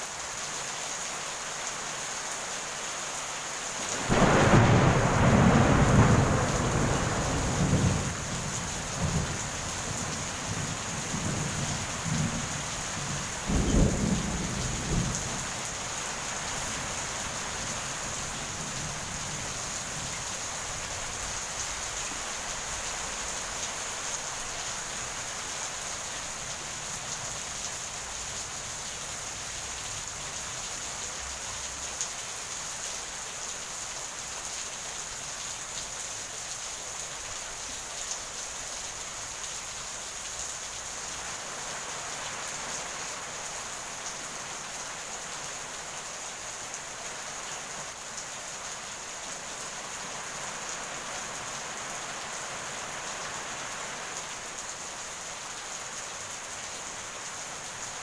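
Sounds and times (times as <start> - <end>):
heavy rain: 0.0 - 58.0
rolling thunder: 3.9 - 15.6.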